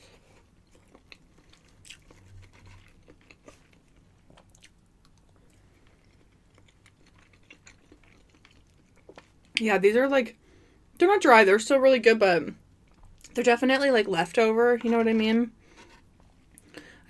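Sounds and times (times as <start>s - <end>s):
wet chewing clicks and smacks: 0.6s - 9.6s.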